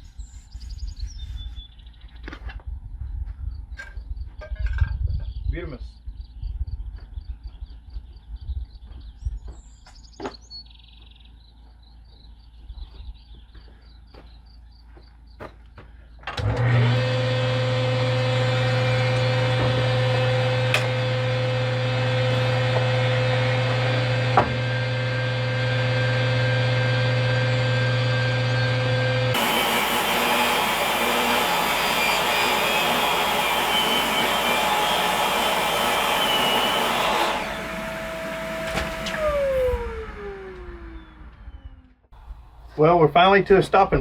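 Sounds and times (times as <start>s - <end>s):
power tool motor humming and whining: 16.3s - 42.0s.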